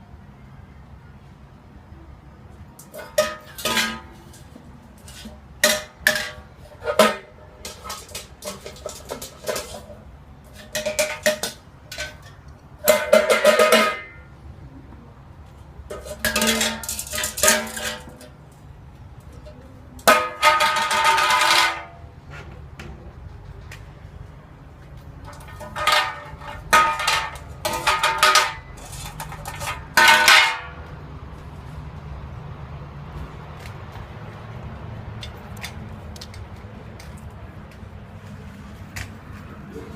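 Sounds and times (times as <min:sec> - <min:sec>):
metal object clattering: 0:02.8 - 0:14.2, 0:15.9 - 0:18.4, 0:20.0 - 0:22.0, 0:25.2 - 0:30.9.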